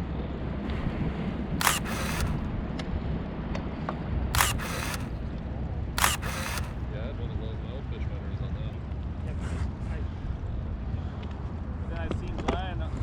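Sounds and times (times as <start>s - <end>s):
camera shutter snap: 1.6s - 2.4s, 4.4s - 5.2s, 6.0s - 6.8s.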